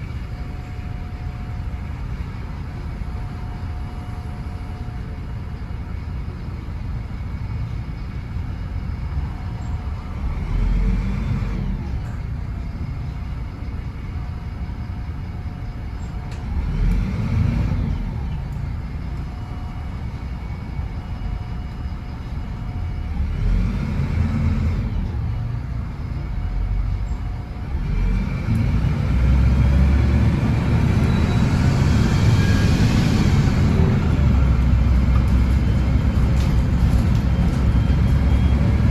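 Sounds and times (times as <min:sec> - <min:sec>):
bus diesel engine revving: 0:08.4 - 0:13.6, 0:16.0 - 0:38.9.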